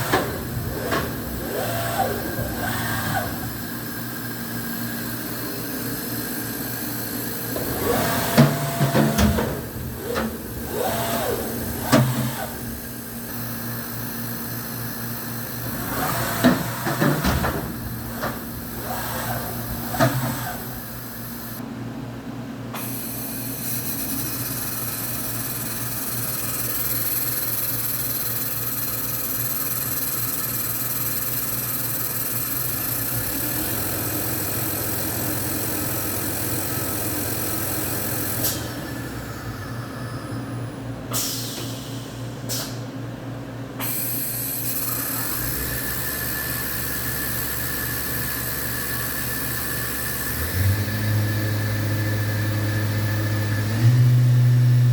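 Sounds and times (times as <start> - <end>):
machine whines rising and falling: 0.0 - 21.5, 44.7 - 54.9
machining center humming: 0.0 - 43.8, 44.7 - 54.9.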